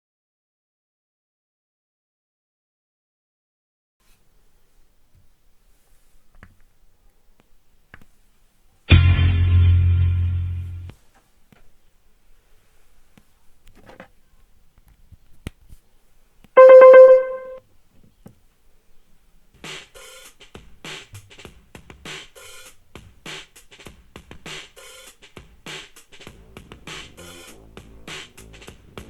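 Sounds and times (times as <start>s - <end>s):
held keyboard note: 16.6s - 17.6s.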